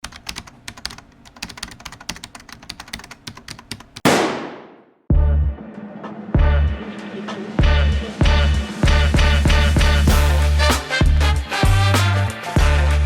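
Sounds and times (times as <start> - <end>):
music with heavy bass beat: 5.1 - 5.6, 7.6 - 13.0.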